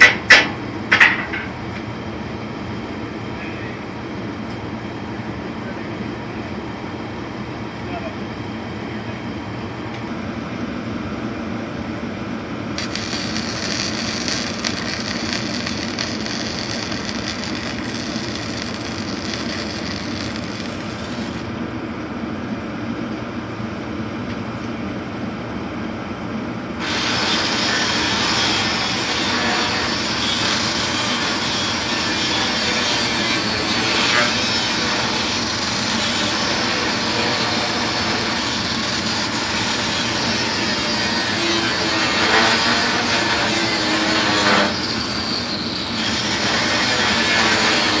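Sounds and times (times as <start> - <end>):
low shop hum: 0.0 - 48.0
harsh hiss: 12.8 - 21.4.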